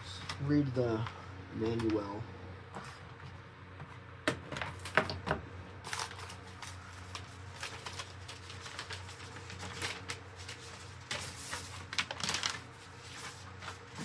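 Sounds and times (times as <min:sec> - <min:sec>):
paper rustling and crinkling: 0:00.1 - 0:02.2, 0:05.8 - 0:14.0.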